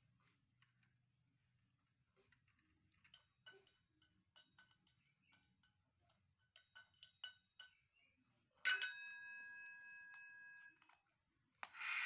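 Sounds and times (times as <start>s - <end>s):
light metallic taps and clinks: 2.1s - 11.2s
ringing metallic clink: 8.7s - 10.7s.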